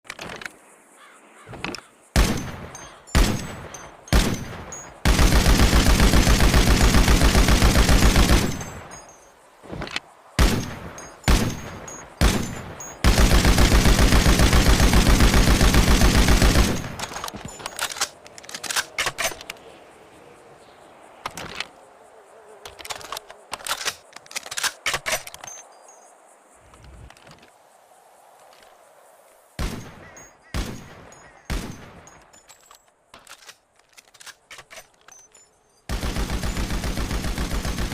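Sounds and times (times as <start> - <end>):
machine gun firing: 2.2 - 9.0, 10.4 - 17.3, 35.9 - 37.9.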